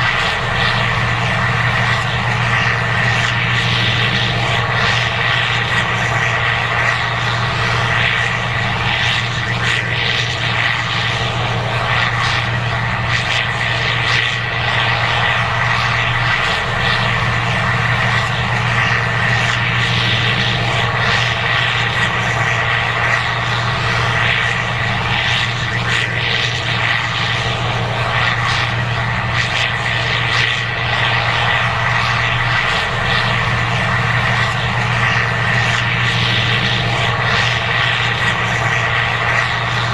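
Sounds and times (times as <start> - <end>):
combine harvester engine drone: 0.0 - 39.9
steady high whine: 0.0 - 39.9.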